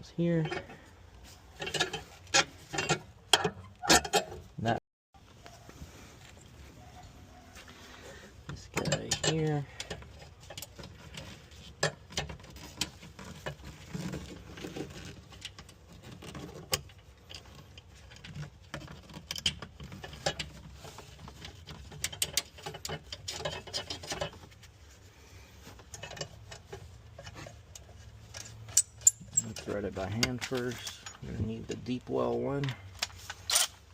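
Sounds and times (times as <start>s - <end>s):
metal and plastic parts clicking: 32.6s - 33.8s.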